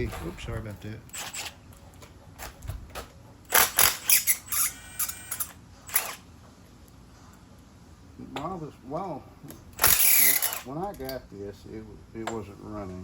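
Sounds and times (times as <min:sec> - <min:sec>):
impact wrench bursts: 0:01.1 - 0:01.6, 0:03.5 - 0:06.2, 0:09.8 - 0:10.7.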